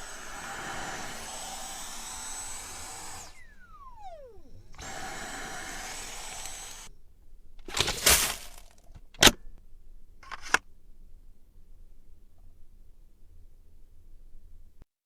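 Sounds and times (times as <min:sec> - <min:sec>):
motor spinning down: 0:00.0 - 0:06.9
vacuum cleaner whining: 0:00.0 - 0:06.9, 0:07.6 - 0:08.7.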